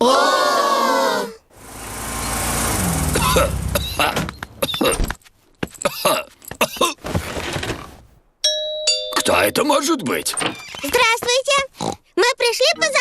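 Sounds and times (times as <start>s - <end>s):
cartoon car engine: 1.5s - 5.0s
character coughing: 3.2s - 5.0s, 5.8s - 7.0s.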